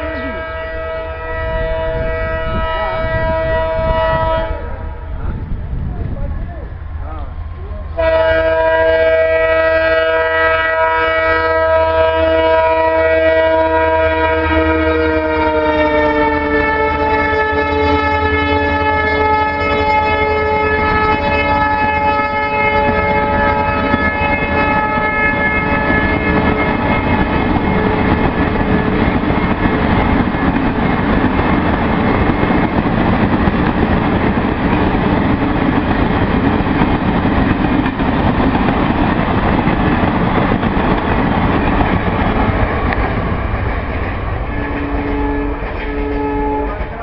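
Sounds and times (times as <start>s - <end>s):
locomotive horn: 0.0s - 5.2s, 8.0s - 30.0s, 44.4s - 47.0s
train passing with rumble: 0.0s - 47.0s
wheel clickety-clack: 22.8s - 47.0s.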